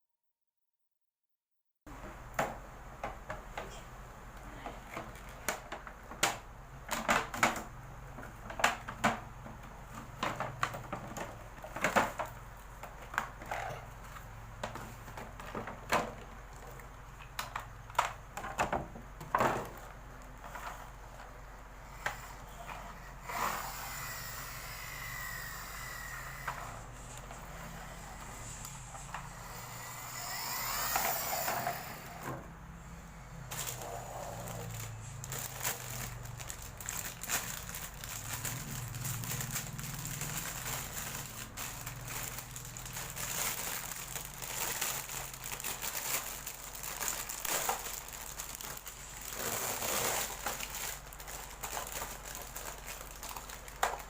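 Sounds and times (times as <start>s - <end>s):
whirring noise: 21.9s - 36.1s
clicks and knocks of toys: 50.2s - 54.0s.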